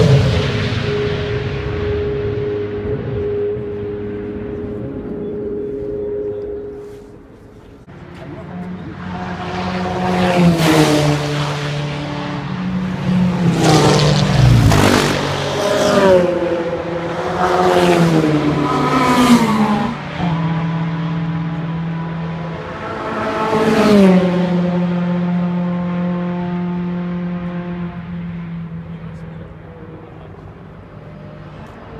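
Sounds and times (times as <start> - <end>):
low engine drone: 0.0 - 31.9
race cars passing at speed: 0.0 - 31.9.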